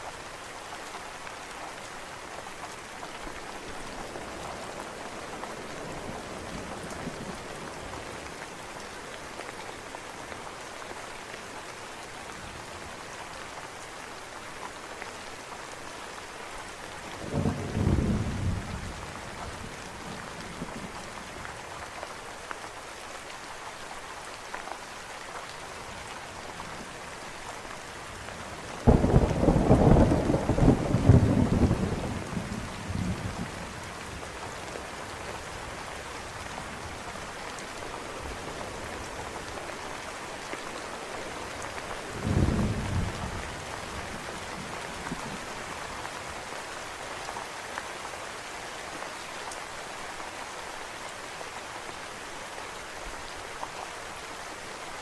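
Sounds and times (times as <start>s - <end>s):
steady rain: 0.0s - 55.0s
thunder cracking and rumbling: 28.9s - 33.6s.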